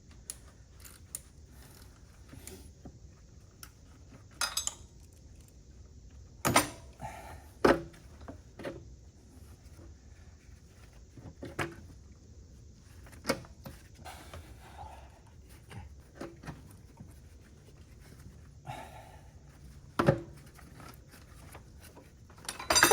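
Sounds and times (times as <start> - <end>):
hand tools clinking on metal: 22.4 - 22.9.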